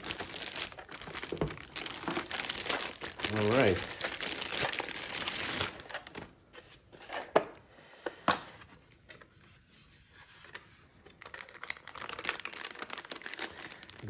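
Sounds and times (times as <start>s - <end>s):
packaging crinkling: 0.0s - 6.3s, 10.3s - 14.0s.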